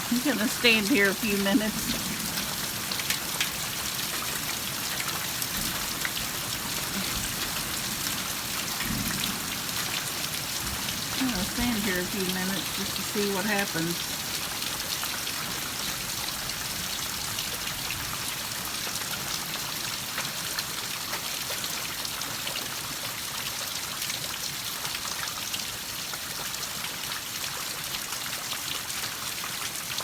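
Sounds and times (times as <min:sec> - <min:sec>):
heavy rain falling: 0:00.0 - 0:30.0
raindrops ticking on surfaces: 0:00.0 - 0:30.0.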